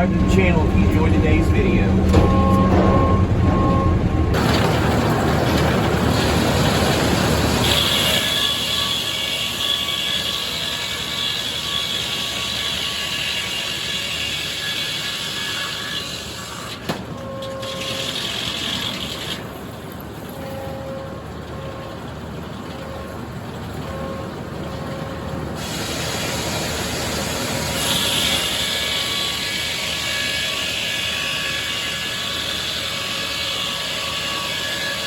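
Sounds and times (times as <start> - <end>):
high whine: 0.0 - 4.6
sawmill saw cutting log: 4.4 - 19.6, 25.5 - 35.0.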